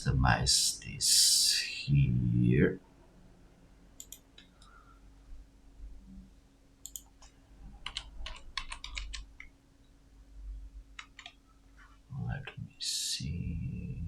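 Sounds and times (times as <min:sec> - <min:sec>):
faint low hum: 0:00.0 - 0:14.0
keyboard and mouse clicks: 0:04.0 - 0:04.6, 0:06.8 - 0:09.5, 0:11.0 - 0:11.4.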